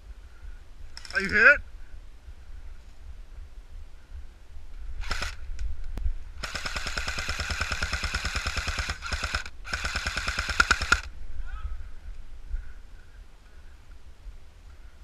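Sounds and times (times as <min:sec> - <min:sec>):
airsoft rifle firing bursts: 0:05.0 - 0:05.4, 0:06.4 - 0:11.1.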